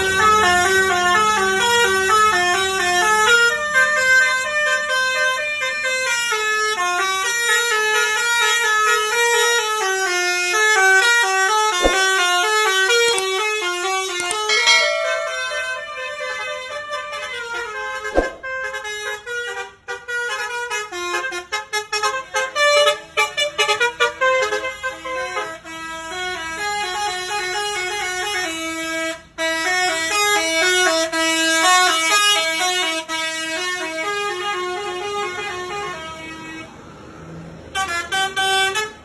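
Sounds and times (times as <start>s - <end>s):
bus horn playing a tune: 0.0s - 10.7s, 19.0s - 36.5s
sharp click: 11.8s - 12.1s, 14.2s - 15.8s, 18.2s - 18.4s.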